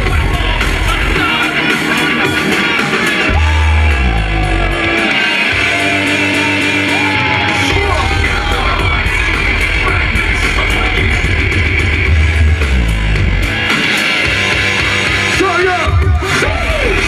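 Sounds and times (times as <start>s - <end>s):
live band music: 0.0s - 17.0s
long held bass notes: 3.3s - 15.4s.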